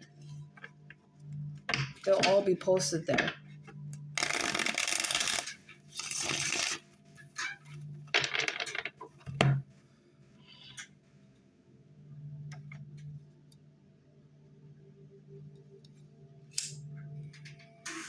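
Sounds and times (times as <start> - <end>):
cards being shuffled: 4.3 - 6.8.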